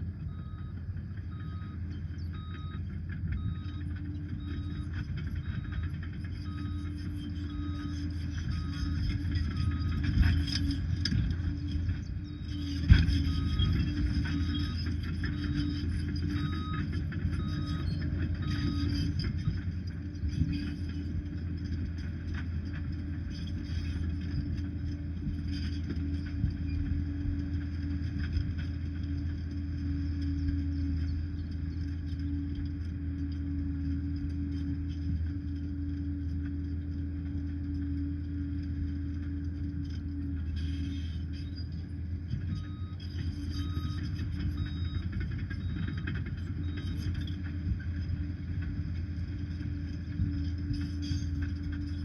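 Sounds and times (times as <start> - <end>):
diesel engine drone with whine: 0.0 - 52.0
reversing alarm beeping: 0.1 - 19.7, 42.4 - 47.3.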